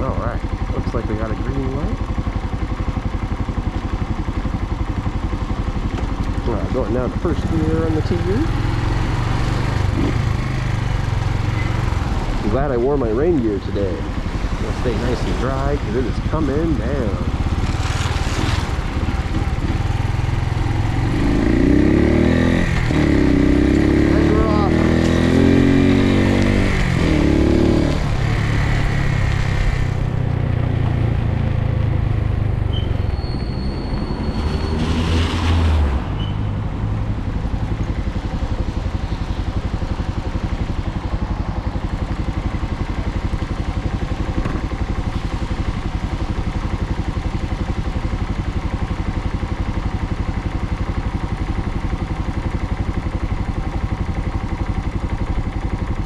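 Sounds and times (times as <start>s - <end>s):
motorcycle engine accelerating: 0.0s - 56.0s.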